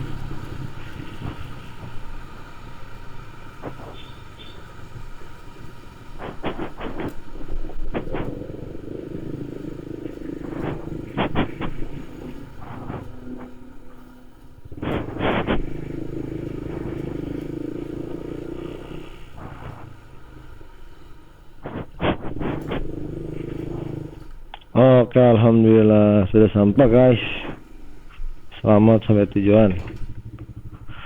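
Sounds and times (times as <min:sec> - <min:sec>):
low rumble: 0:00.0 - 0:24.6
motorcycle engine running: 0:00.0 - 0:31.0.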